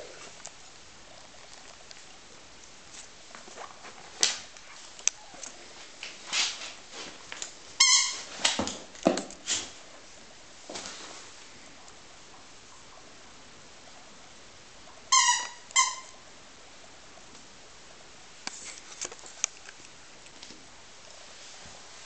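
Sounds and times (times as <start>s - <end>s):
pet scuffling: 0.1s - 12.0s
squeaky toy squeak: 7.8s - 8.3s, 15.1s - 16.2s.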